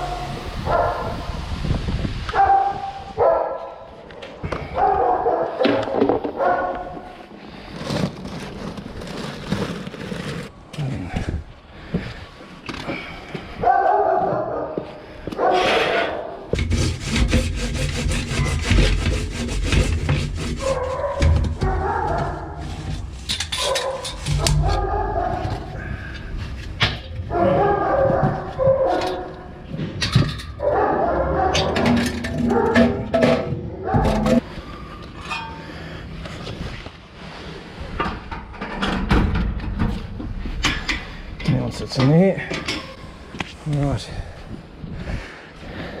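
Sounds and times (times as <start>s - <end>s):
dogs barking: 0.0s - 1.4s, 2.3s - 7.1s, 13.5s - 16.5s, 20.5s - 26.2s, 27.2s - 29.7s, 30.6s - 34.4s.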